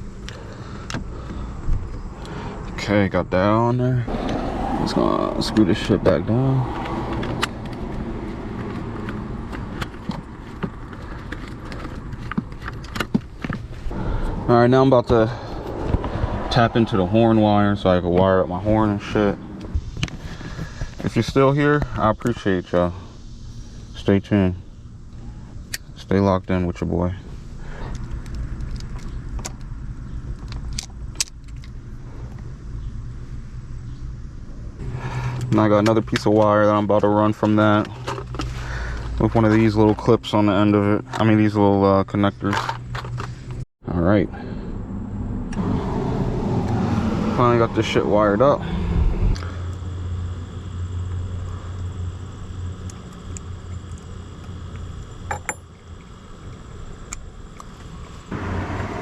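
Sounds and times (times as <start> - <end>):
low hum: 0.0 - 26.0, 42.6 - 59.0
low background rumble: 0.0 - 35.4.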